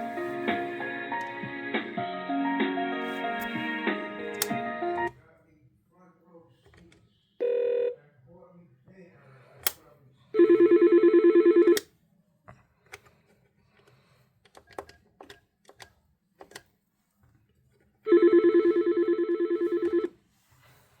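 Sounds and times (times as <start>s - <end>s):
phone clicks: 4.4s - 4.6s.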